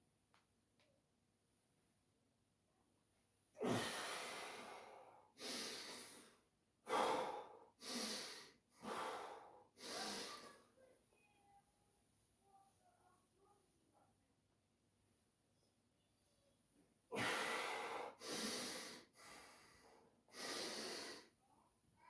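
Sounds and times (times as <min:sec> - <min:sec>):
man breathing hard: 0:03.6 - 0:10.5, 0:17.2 - 0:21.3.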